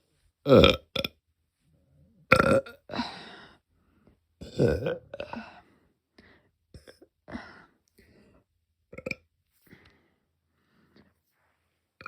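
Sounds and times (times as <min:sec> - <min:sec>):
woman burping: 0:00.5 - 0:01.2, 0:02.3 - 0:03.1, 0:04.4 - 0:05.5, 0:08.9 - 0:09.2.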